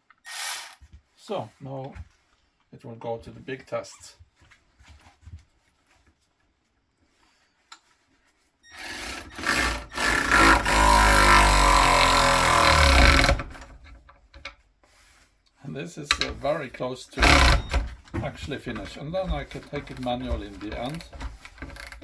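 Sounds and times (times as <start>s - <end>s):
cordless ratchet motor running: 8.8s - 13.7s, 17.2s - 17.8s, 20.8s - 22.0s.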